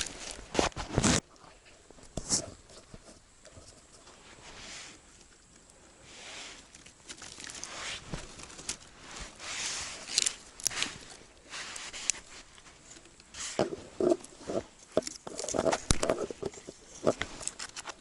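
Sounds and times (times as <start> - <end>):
crunching and rustling in snow: 6.0 - 18.0
dry wood snapping: 6.7 - 8.9, 10.0 - 11.4, 12.0 - 18.0.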